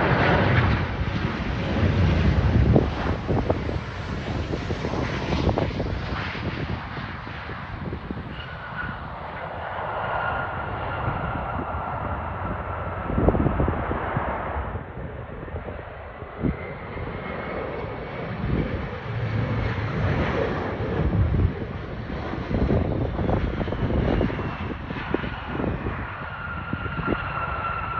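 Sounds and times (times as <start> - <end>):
jet engines whining: 0.0 - 27.9
wind buffeting microphone: 0.0 - 27.9.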